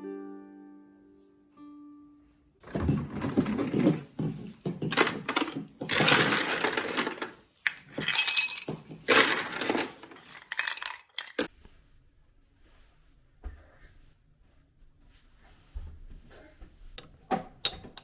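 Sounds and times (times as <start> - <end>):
hard objects clattering: 2.6 - 11.5.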